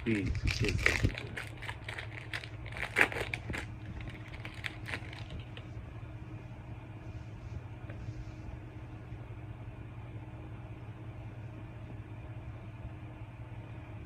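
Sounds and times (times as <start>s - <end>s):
foil wrapper tearing and crinkling: 0.0s - 5.6s.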